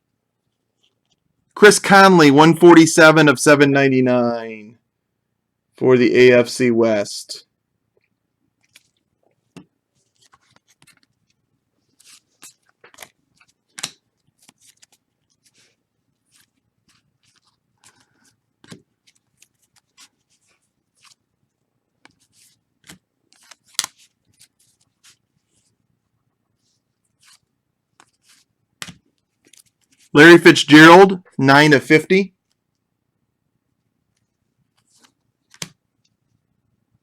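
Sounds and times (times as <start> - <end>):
trading cards flicking and sliding: 10.0 - 21.2, 22.0 - 25.7, 26.6 - 30.1, 34.7 - 35.8.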